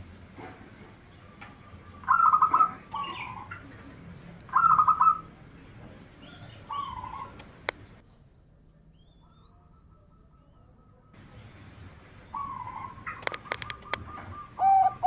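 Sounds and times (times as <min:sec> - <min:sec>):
dove cooing: 0:01.0 - 0:05.4, 0:06.2 - 0:08.0, 0:09.2 - 0:15.0.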